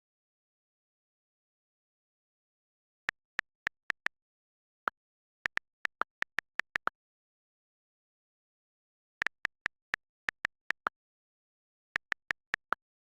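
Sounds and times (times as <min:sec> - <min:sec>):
phone keyboard clicks: 0:03.1 - 0:04.1, 0:05.5 - 0:06.9, 0:09.2 - 0:10.9, 0:12.0 - 0:12.8.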